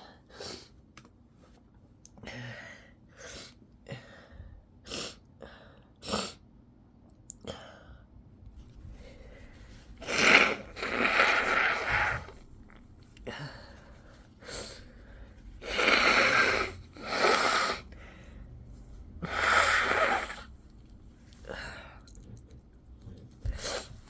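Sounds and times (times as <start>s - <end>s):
person blowing through the nose: 10.0s - 12.5s, 15.6s - 17.9s, 19.2s - 20.6s.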